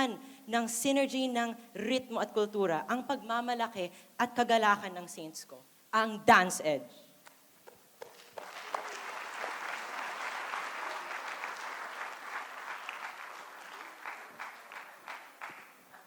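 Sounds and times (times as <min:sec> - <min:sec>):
audience applauding: 0:08.0 - 0:16.0.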